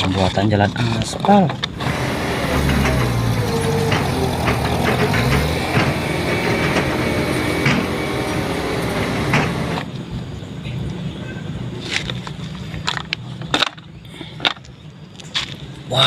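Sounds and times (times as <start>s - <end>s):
heavy vehicle engine running: 1.6s - 13.5s.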